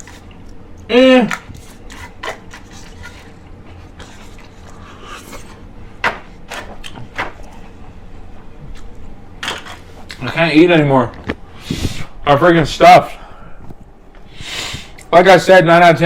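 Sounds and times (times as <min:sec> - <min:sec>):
handling noise rubbing and scraping: 0:01.6 - 0:05.7.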